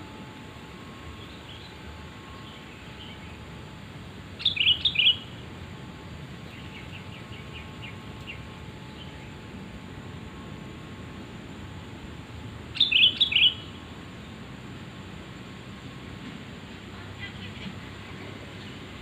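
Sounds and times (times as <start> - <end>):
bird calling: 4.3 - 5.6, 6.4 - 9.4, 12.7 - 14.3.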